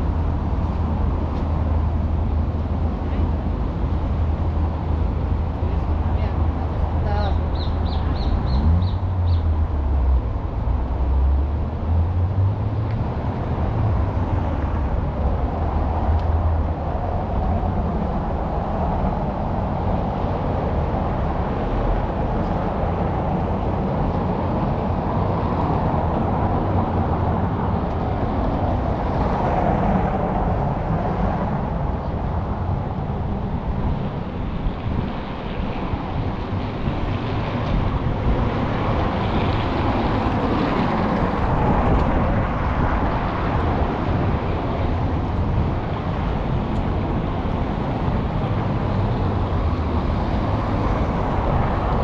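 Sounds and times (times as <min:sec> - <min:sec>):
cars passing: 0:00.0 - 0:52.0.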